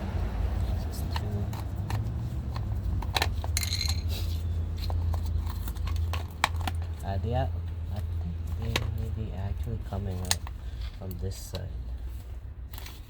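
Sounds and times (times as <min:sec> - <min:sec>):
metallic rattle: 0:03.3 - 0:04.1
metal and plastic parts clicking: 0:04.8 - 0:07.0.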